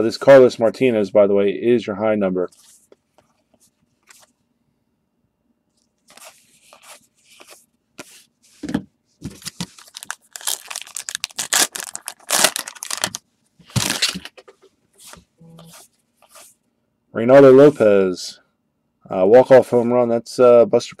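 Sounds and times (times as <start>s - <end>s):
card pack wrapper tearing: 9.4s - 14.4s.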